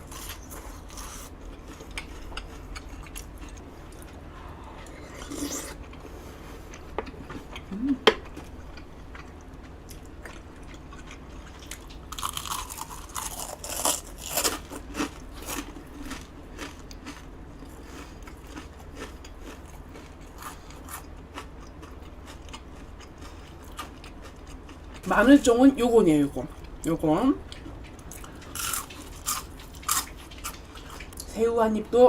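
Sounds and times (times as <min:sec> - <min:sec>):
quiet chewing: 0:00.1 - 0:13.4, 0:27.4 - 0:31.3
crunching bites of fried batter: 0:12.1 - 0:21.5.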